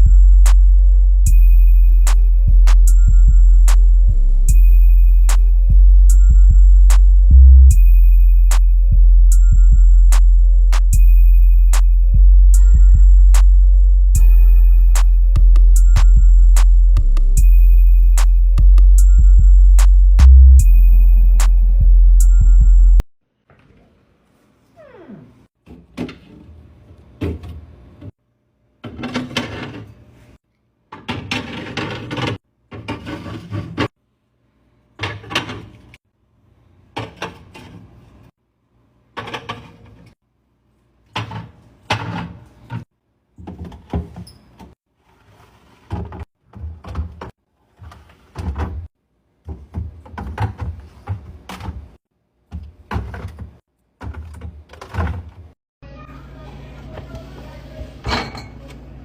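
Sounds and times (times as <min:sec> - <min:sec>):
fridge drawers sliding and closing: 0:28.8 - 0:30.1, 0:31.0 - 0:33.9, 0:41.1 - 0:48.9.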